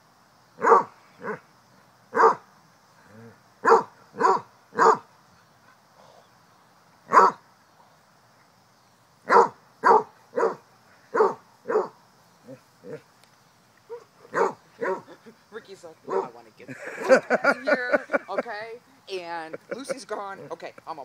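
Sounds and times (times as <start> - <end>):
dog barking: 0.6 - 1.4, 2.1 - 2.4, 3.6 - 5.1, 7.1 - 7.4, 9.3 - 12.0, 13.9 - 15.1.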